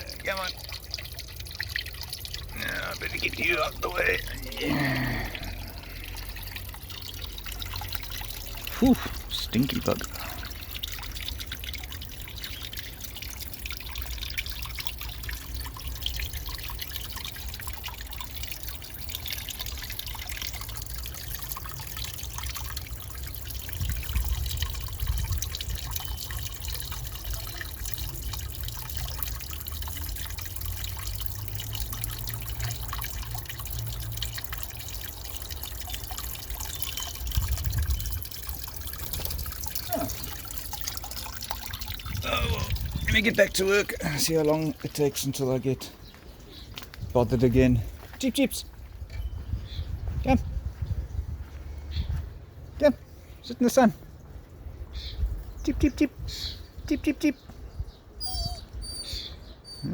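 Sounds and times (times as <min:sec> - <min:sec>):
water trickling and dripping: 0:00.0 - 0:59.9
low rumbles: 0:37.2 - 0:44.2.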